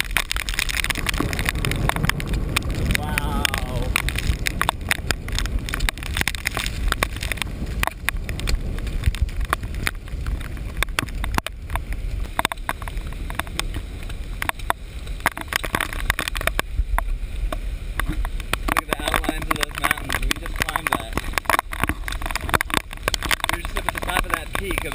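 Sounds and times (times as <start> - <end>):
camera case rumbling and knocking: 0.0 - 3.1, 18.0 - 24.9.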